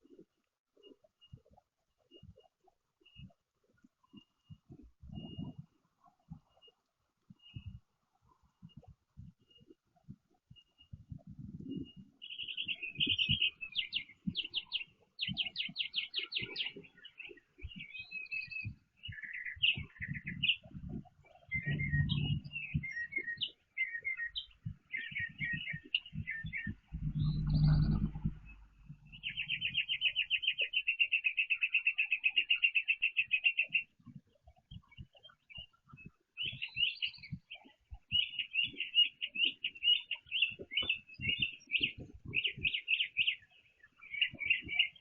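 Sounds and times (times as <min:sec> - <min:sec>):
songbirds chirping and trilling: 0:00.0 - 0:45.0
low thumps and knocks: 0:20.6 - 0:22.9, 0:26.1 - 0:29.9.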